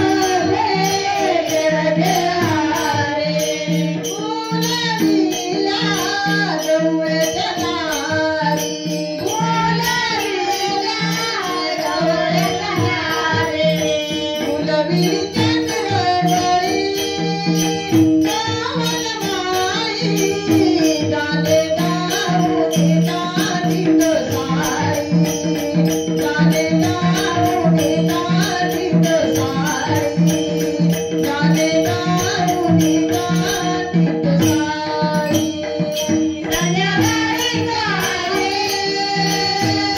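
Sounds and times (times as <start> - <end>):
hand drum beat: 0.0 - 39.9
person singing: 0.0 - 39.9
small jingling cymbals: 0.0 - 39.9.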